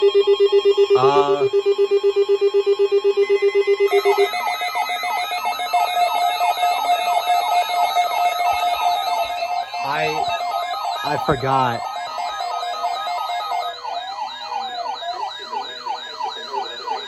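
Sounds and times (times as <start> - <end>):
warbling alarm: 0.0 - 17.0
rapid electronic beeping: 3.8 - 17.0.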